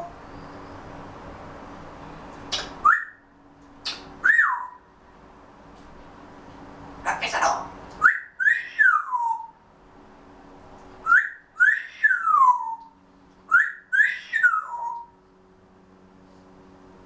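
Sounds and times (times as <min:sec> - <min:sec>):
parrot whistling: 0:02.5 - 0:03.2, 0:03.8 - 0:04.8, 0:07.1 - 0:09.5, 0:11.0 - 0:12.9, 0:13.5 - 0:15.1.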